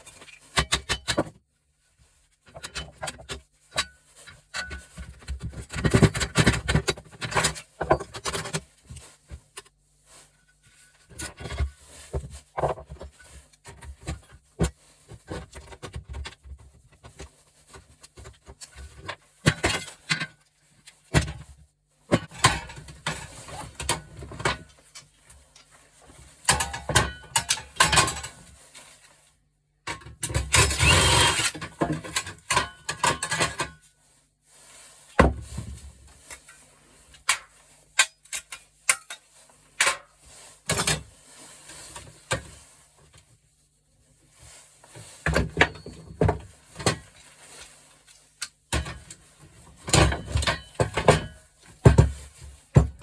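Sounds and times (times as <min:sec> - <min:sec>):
metal parts clanking and rattling: 0:02.4 - 0:08.7, 0:22.1 - 0:28.5, 0:29.9 - 0:33.9, 0:37.2 - 0:41.1, 0:45.2 - 0:53.0.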